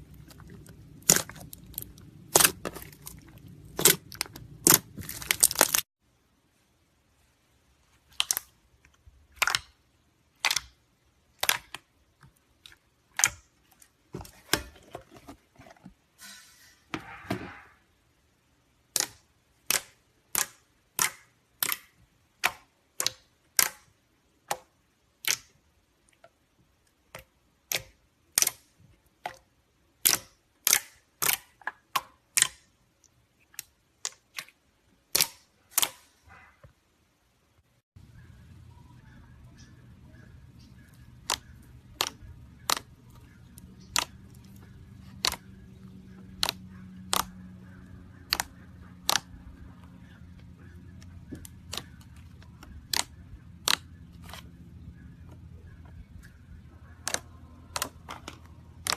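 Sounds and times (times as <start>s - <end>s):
slime crackling: 0.0s - 5.9s, 40.1s - 54.6s, 56.1s - 58.9s.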